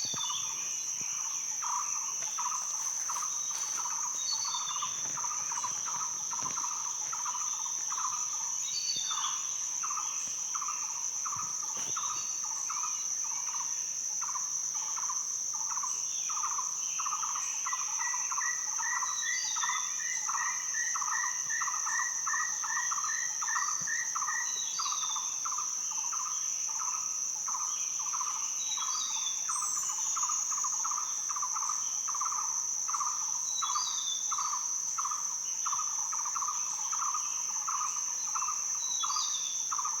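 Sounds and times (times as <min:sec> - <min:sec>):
high-pitched insect drone: 0:00.0 - 0:40.0
pulsing night-insect chorus: 0:00.0 - 0:40.0.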